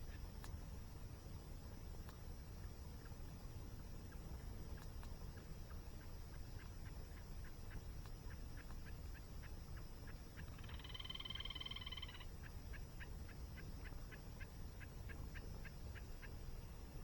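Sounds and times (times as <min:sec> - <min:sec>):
small animal calling: 0:04.1 - 0:16.6
buzzy drawn-out call: 0:10.6 - 0:12.3.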